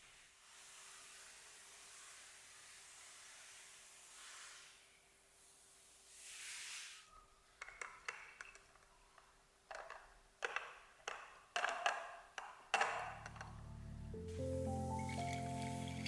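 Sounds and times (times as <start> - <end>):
soft music: 13.1 - 16.0
tableware clinking: 14.8 - 16.0.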